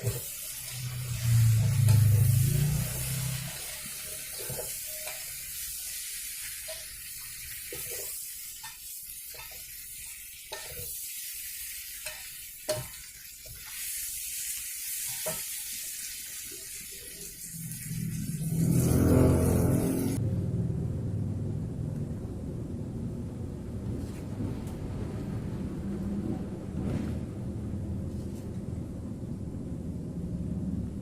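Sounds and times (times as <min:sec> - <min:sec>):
fish and chillies sizzling in a pan: 0:00.0 - 0:20.2.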